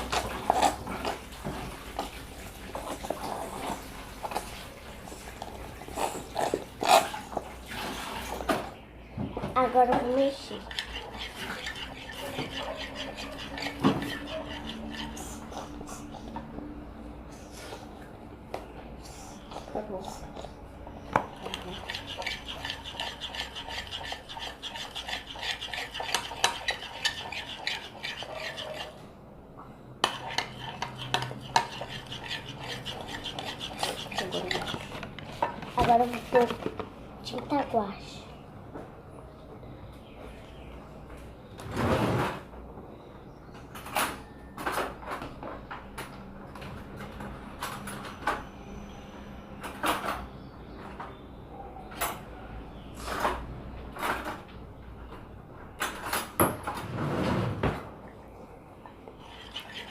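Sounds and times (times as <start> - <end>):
utensil scraping slime in a bowl: 0.0 - 8.5, 9.8 - 16.2, 21.2 - 29.0, 30.0 - 36.7, 59.2 - 59.9.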